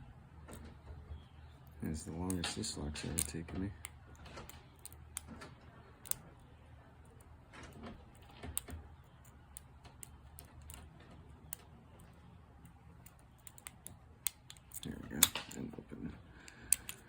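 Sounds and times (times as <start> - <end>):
lock pick clicking in padlock: 2.2 - 6.3, 8.0 - 15.6, 16.5 - 17.0.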